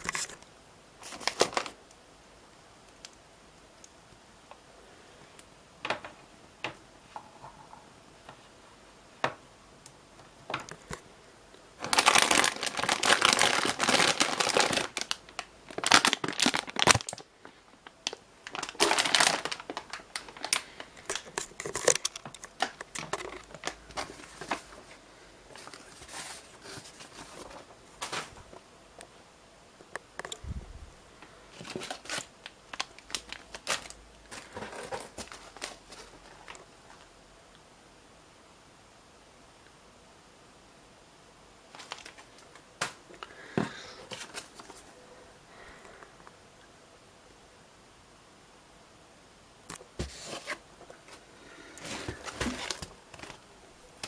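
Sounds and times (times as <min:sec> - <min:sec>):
plastic packaging crinkling: 0:01.0 - 0:01.8, 0:11.8 - 0:28.6, 0:31.5 - 0:37.0, 0:41.7 - 0:43.3, 0:44.0 - 0:44.9, 0:51.8 - 0:54.0.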